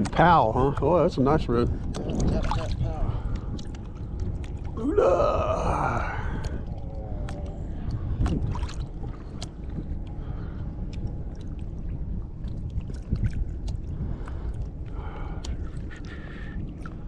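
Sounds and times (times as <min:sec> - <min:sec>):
water around a boat: 0:00.0 - 0:17.0
wind: 0:00.0 - 0:17.0
small splashes: 0:01.9 - 0:04.9, 0:06.3 - 0:14.6.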